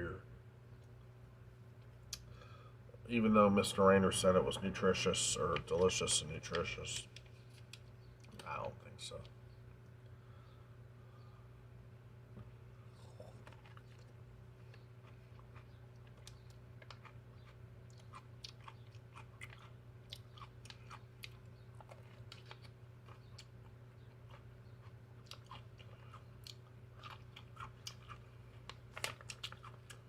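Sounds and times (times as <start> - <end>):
steady low hum: 0.0 - 30.0
close-up chewing crunches: 12.9 - 30.0.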